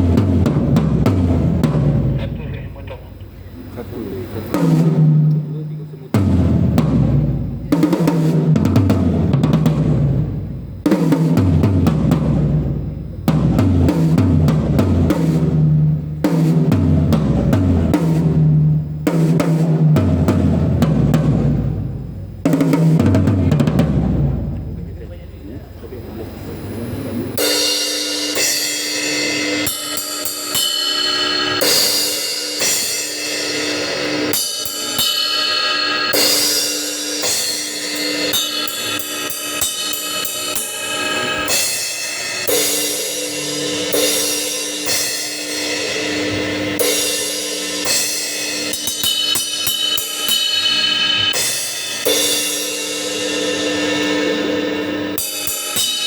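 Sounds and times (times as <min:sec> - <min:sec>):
acoustic drum kit: 0:00.0 - 0:56.0
hi-hat: 0:24.8 - 0:56.0
crash cymbal hits: 0:26.2 - 0:56.0.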